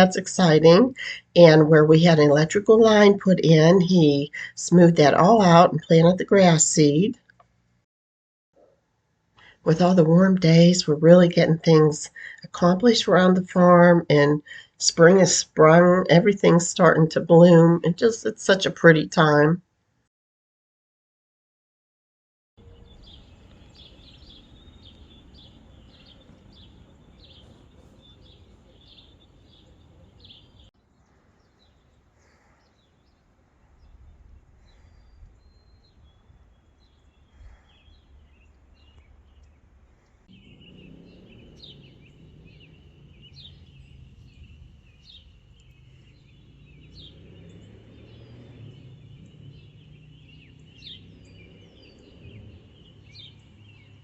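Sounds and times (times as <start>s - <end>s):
small birds chirping: 0.0s - 7.4s, 9.4s - 19.4s, 22.6s - 54.0s
faint outdoor rumble: 22.6s - 54.0s.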